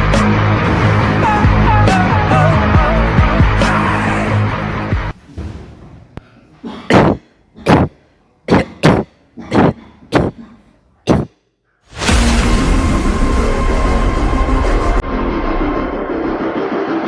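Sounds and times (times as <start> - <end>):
loud music: 0.0 - 5.1
person coughing: 6.3 - 11.4.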